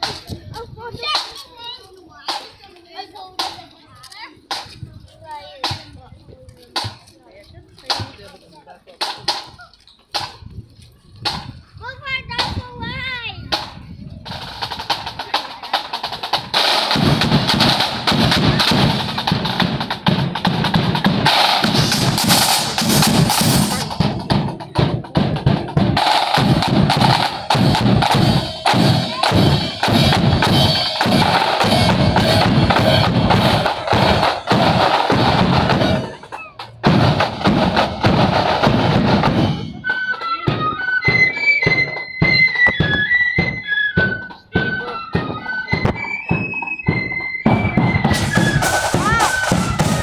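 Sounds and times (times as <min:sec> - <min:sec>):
marching band drums: 0:06.6 - 0:07.2, 0:07.8 - 0:08.4, 0:09.0 - 0:10.4, 0:12.2 - 0:50.0
flutes playing high melody: 0:39.7 - 0:50.0.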